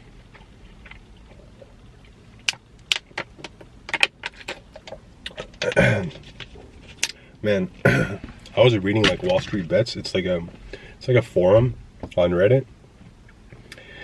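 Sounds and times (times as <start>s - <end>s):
chewing and lip-smacking: 0.2s - 3.6s.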